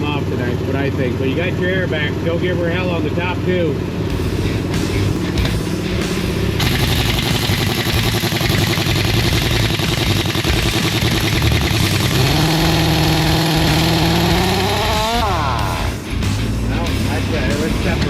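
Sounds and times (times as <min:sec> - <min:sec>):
pitched whine: 0:04.9 - 0:16.2
impact wrench hammering: 0:06.6 - 0:15.3.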